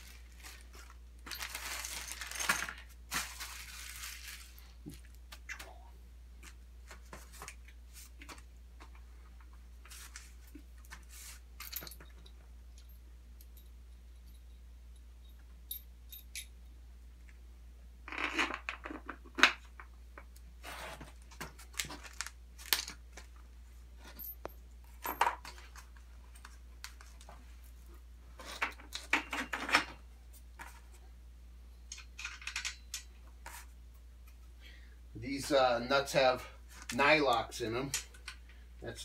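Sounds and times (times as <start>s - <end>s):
rustling: 0.0s - 5.5s
metal bolts and nuts clinking: 11.6s - 16.7s, 31.9s - 33.2s.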